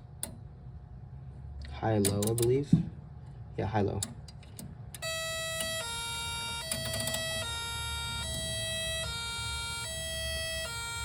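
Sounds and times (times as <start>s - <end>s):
siren hi-lo tone: 5.0s - 11.0s.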